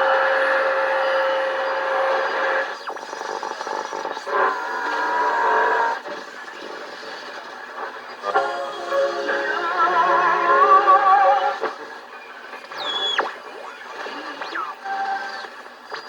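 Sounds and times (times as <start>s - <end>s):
radio static hiss: 1.0s - 16.0s
tonal station audio: 8.3s - 11.8s
sweeping radio whistles: 8.3s - 16.0s.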